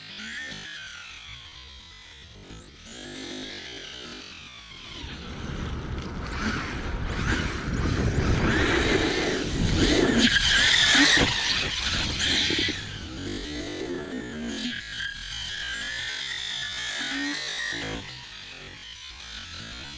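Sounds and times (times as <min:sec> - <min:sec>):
electric motor whine: 0:00.0 - 0:19.9.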